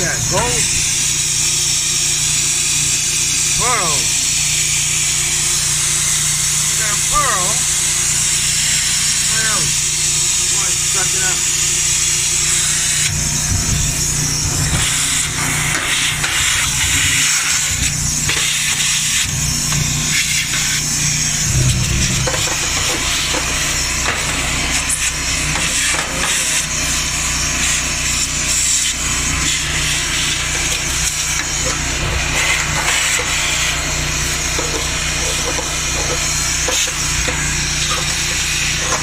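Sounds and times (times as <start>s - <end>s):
generator engine hum: 0.0s - 39.0s
shop vac running: 0.0s - 39.0s.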